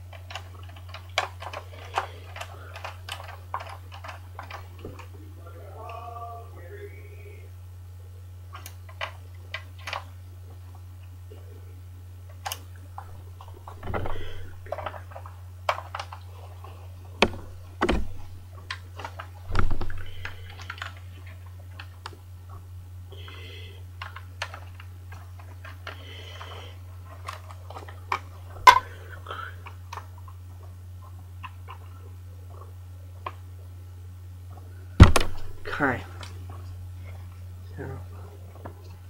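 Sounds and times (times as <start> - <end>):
low steady hum: 0.0 - 39.0
plastic bricks clicking: 0.1 - 5.1
heavier knocks: 17.2 - 18.4, 19.5 - 20.4, 35.0 - 35.8.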